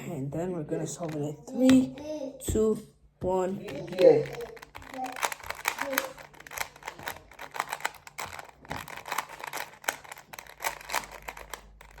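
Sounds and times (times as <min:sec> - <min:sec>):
puzzle cube plastic clicks: 0:03.6 - 0:12.0.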